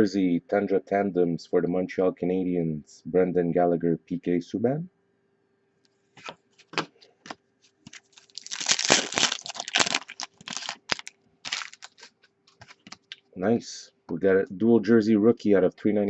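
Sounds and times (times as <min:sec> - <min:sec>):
wrapper crinkling and tearing: 0:07.9 - 0:13.2.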